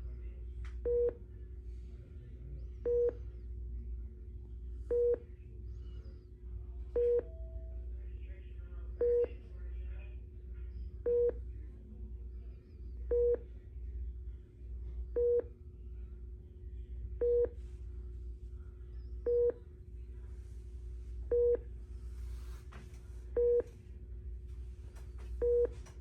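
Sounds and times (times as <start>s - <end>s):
low hum: 0.0s - 26.0s
patient monitor beeping: 0.8s - 1.3s, 2.6s - 3.4s, 4.8s - 5.4s, 6.9s - 9.6s, 10.8s - 11.5s, 13.0s - 13.5s, 15.2s - 15.6s, 17.2s - 17.6s, 19.0s - 19.7s, 21.3s - 21.8s, 23.3s - 23.9s, 25.0s - 26.0s.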